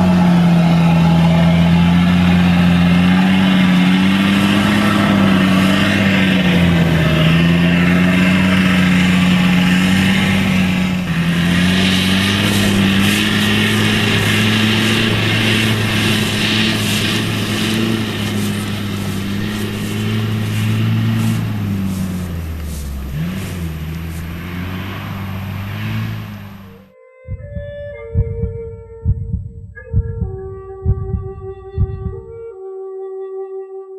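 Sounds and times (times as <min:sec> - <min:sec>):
vehicle engine under load: 0:00.0 - 0:26.9.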